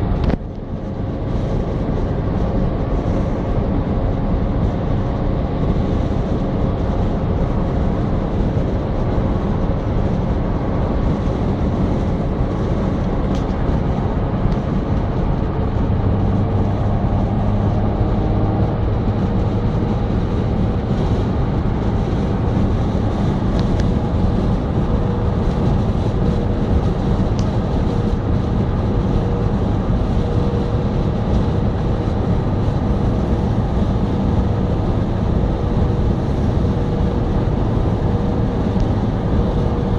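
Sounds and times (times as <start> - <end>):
moving vehicle rumble: 0.0 - 39.9.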